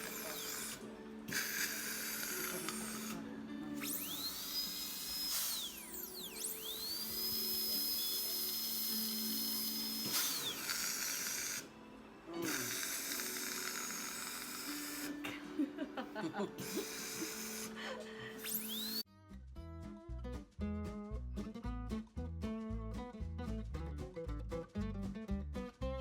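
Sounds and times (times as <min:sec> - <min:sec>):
dental drill whining: 0:00.0 - 0:19.0.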